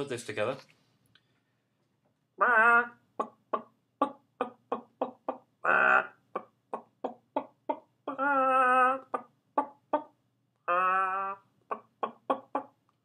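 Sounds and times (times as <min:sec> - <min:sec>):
man imitating hen clucking: 0:02.4 - 0:12.8.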